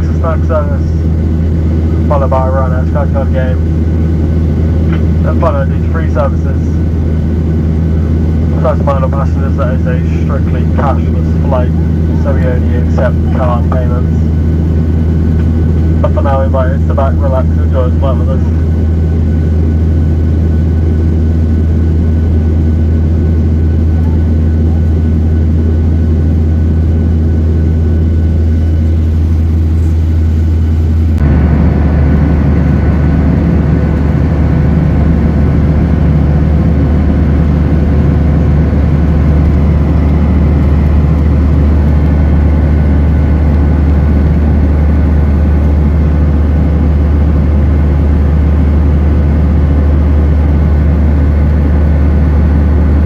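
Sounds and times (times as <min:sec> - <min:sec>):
airplane cabin engine drone: 0:00.0 - 0:53.0.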